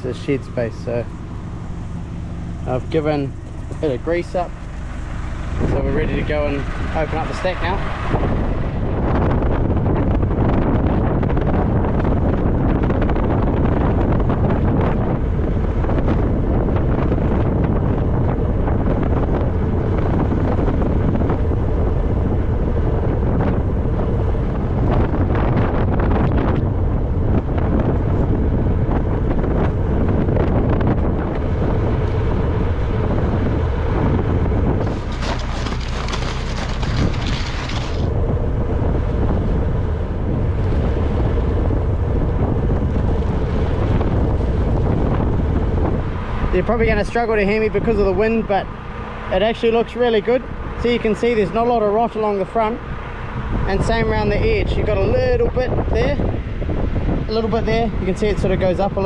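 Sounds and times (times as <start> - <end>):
farm vehicle engine running: 0.0 - 10.8, 26.3 - 55.4
wind buffeting microphone: 0.0 - 59.0.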